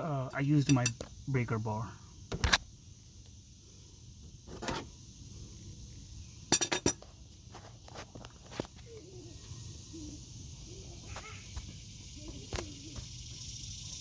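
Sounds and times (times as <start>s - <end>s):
metal tools clinking: 0.5s - 1.1s, 6.5s - 7.0s.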